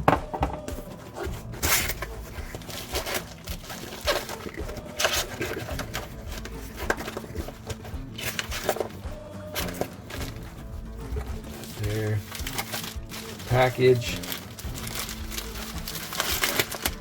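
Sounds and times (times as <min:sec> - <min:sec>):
tape and packing material rustling: 0:00.6 - 0:17.0
cardboard box being cut open: 0:01.2 - 0:08.9, 0:11.6 - 0:17.0.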